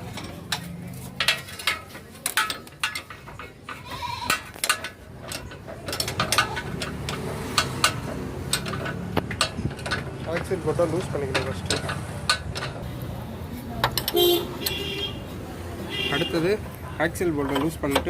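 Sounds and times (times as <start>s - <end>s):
spanner clicking on metal bolt: 0.0s - 12.9s, 13.8s - 14.8s.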